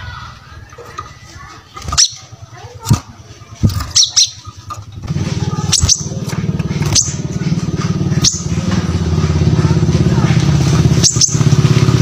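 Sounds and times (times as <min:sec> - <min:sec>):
small engine humming: 0:01.8 - 0:12.0
bird giving sharp high chips: 0:03.8 - 0:04.6, 0:05.4 - 0:07.5.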